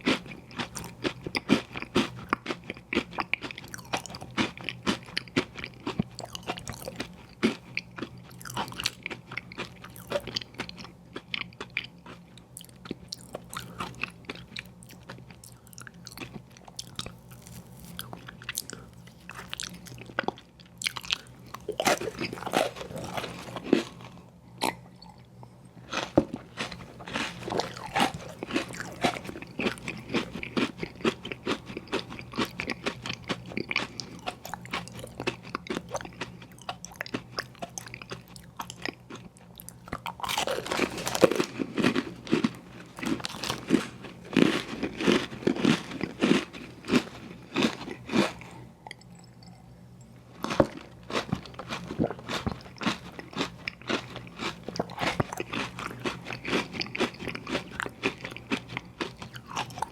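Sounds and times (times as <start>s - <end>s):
biting and chewing ice cream sandwich: 0.0s - 49.5s, 50.4s - 59.9s.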